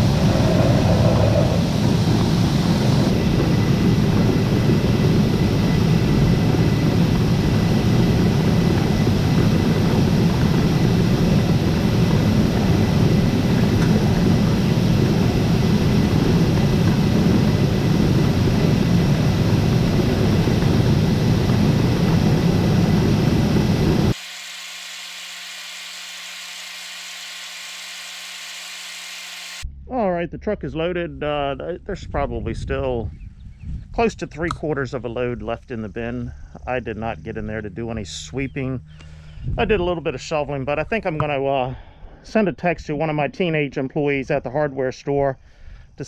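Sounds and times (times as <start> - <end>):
steady hum: 0.0 - 29.7
grain auger machinery running: 2.6 - 29.6.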